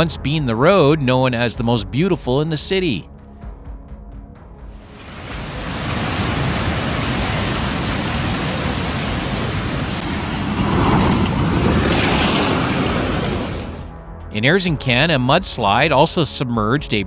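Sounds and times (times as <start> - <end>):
floodwater rushing: 4.8 - 13.9.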